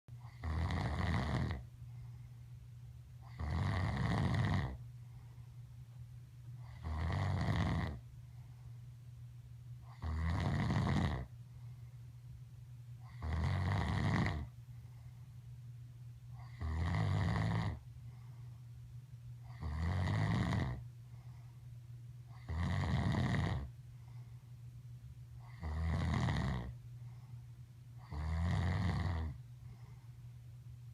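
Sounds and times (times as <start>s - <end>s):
man snoring heavily: 0.3s - 1.6s, 3.3s - 4.8s, 6.7s - 8.0s, 9.9s - 11.3s, 13.1s - 14.5s, 16.4s - 17.8s, 19.5s - 20.8s, 22.4s - 23.7s, 25.5s - 26.7s, 28.0s - 29.4s.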